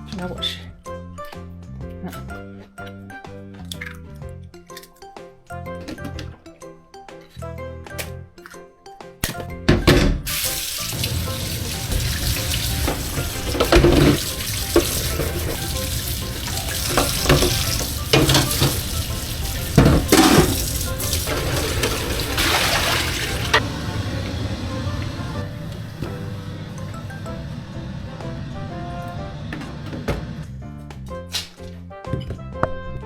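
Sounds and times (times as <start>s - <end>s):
tap running into sink: 10.3s - 23.6s
dishes clunking: 11.0s - 23.6s.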